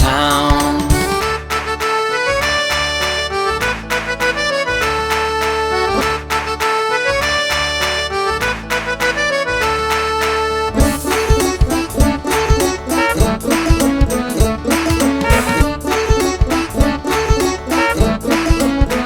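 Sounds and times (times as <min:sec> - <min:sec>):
instrumental children's music: 0:00.0 - 0:19.0.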